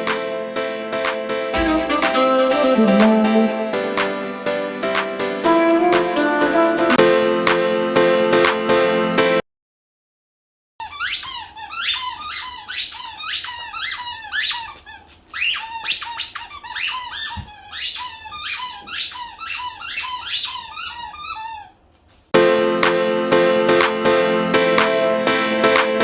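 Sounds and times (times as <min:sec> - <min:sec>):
high-pitched rising squeaks: 0:01.6 - 0:04.0.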